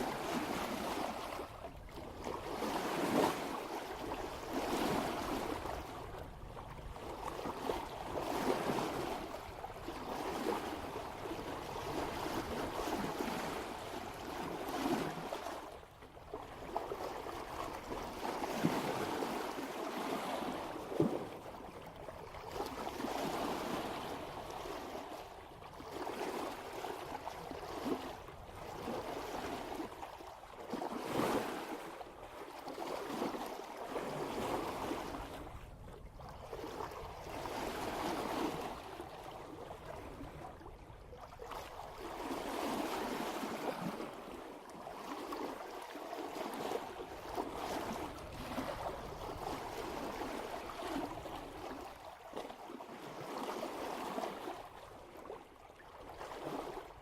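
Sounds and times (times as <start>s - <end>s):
water rushing along boat bow: 0.0s - 57.0s.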